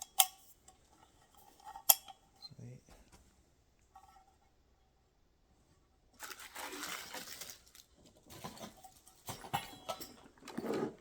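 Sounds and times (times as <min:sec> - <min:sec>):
packaging crinkling and rustling: 0:06.2 - 0:08.7.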